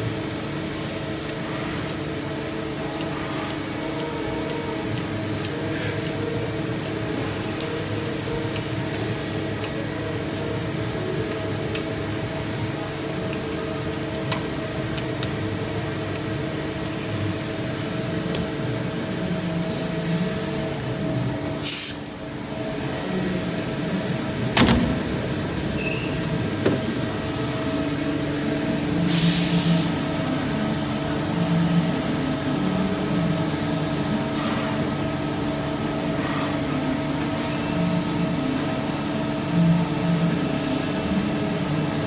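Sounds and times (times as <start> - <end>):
machine humming: 0.0 - 42.0
short hiss: 21.6 - 22.0.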